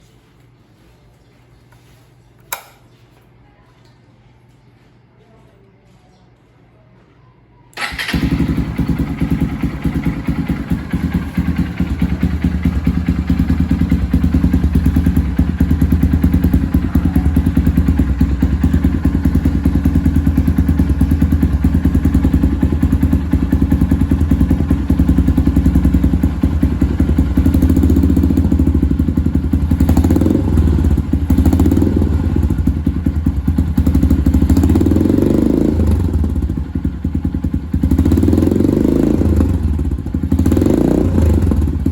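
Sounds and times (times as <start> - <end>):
motorcycle engine idling: 7.8 - 41.9.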